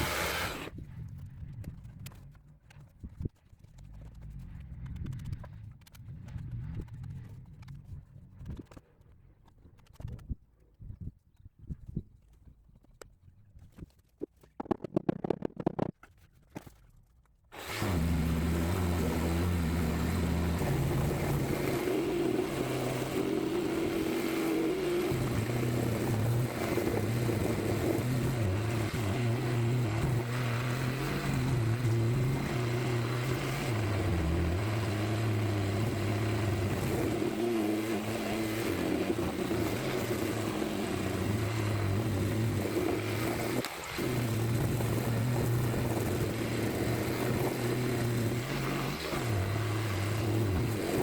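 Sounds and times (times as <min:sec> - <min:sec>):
motor-driven tool humming: 0:00.0 - 0:00.7.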